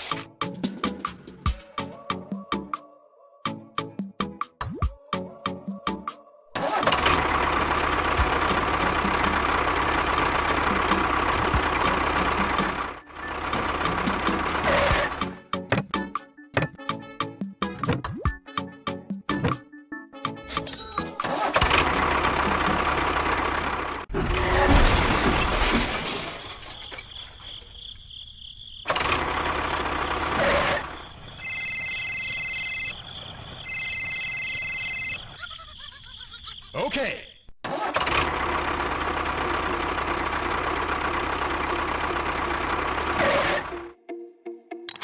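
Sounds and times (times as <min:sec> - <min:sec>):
small engine running: 0:06.6 - 0:15.3, 0:21.4 - 0:24.1, 0:28.9 - 0:32.2, 0:37.7 - 0:43.9.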